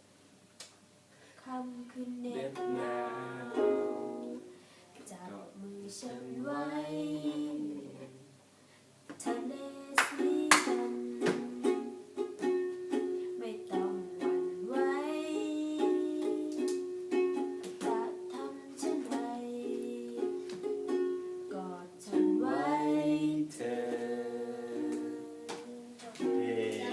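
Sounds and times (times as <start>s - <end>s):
person singing: 1.5s - 4.5s, 9.2s - 12.0s, 13.3s - 16.8s, 17.6s - 20.8s, 21.5s - 26.9s
plucked string instrument: 2.5s - 4.5s, 9.2s - 22.8s, 23.7s - 26.9s.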